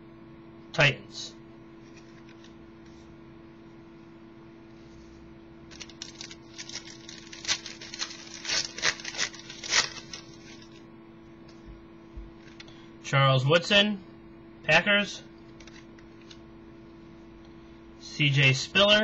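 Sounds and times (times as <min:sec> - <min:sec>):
wrapper crinkling: 0:05.7 - 0:10.8, 0:15.6 - 0:16.4.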